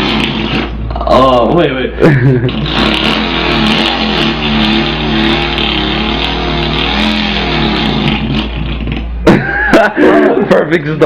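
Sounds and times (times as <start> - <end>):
person imitating an engine: 2.1 - 10.5.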